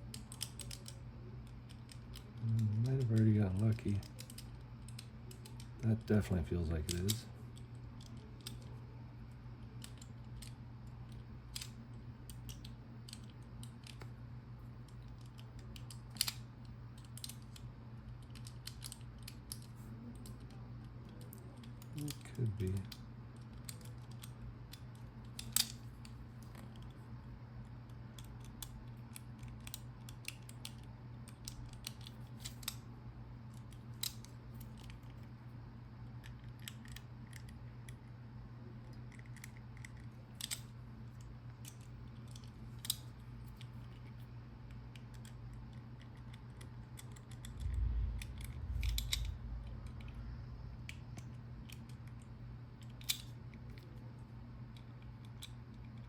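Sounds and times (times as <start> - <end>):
steady low hum: 0.0 - 56.0
low bumps: 47.5 - 51.4.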